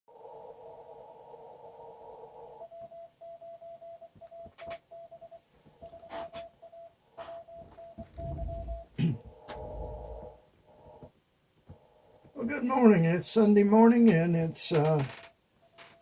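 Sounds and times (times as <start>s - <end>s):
morse code tone: 6.0s - 10.4s.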